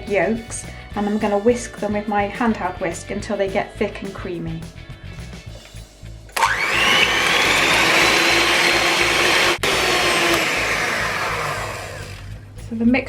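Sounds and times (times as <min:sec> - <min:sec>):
electric hand whisk whining: 0:06.4 - 0:12.3.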